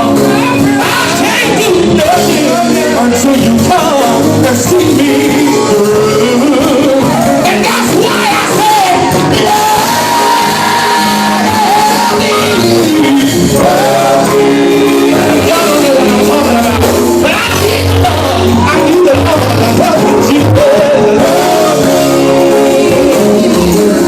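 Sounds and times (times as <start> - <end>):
gospel group singing: 0.0 - 24.0
instrumental backing: 0.0 - 24.0.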